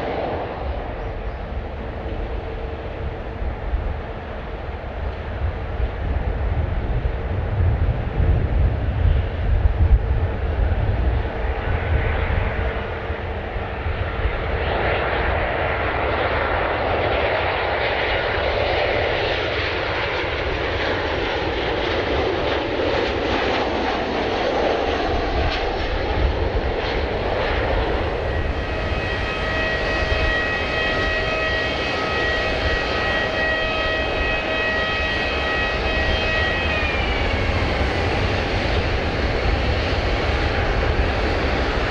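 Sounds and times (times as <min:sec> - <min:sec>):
high-pitched engine whine: 0:00.0 - 0:41.9
jet engines rushing and rumbling: 0:00.0 - 0:41.9.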